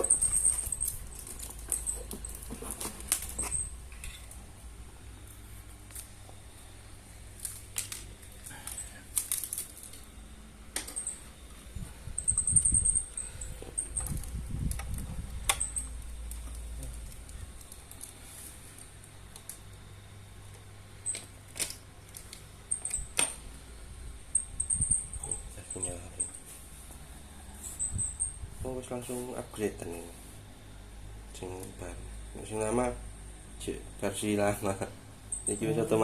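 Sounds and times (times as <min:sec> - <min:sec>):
low rumbling handling: 0:07.2 - 0:18.1.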